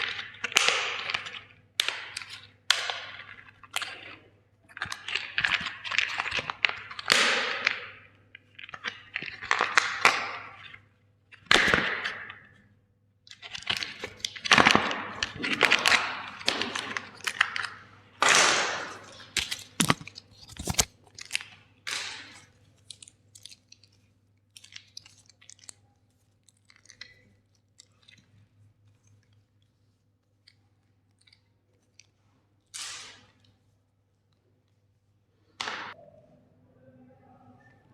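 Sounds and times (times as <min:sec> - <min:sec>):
plastic toys cracking and crunching: 0:00.0 - 0:12.6, 0:13.2 - 0:28.4.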